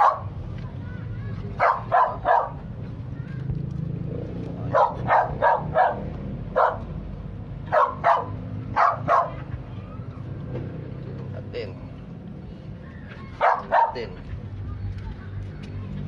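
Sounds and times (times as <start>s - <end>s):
dog barking: 0.0s - 0.3s, 1.6s - 2.7s, 4.6s - 7.0s, 7.7s - 9.5s, 13.4s - 14.2s.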